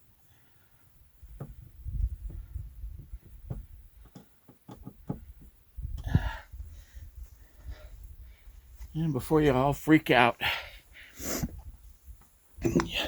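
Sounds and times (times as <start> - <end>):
light clicks and knocks: 3.2 - 5.5.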